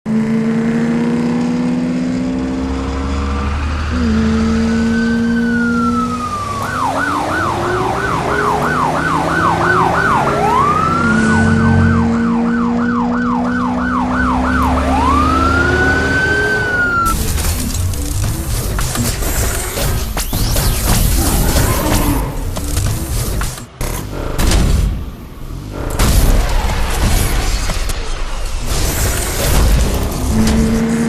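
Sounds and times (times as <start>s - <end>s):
emergency vehicle siren wailing: 3.3s - 17.2s, 21.1s - 22.5s.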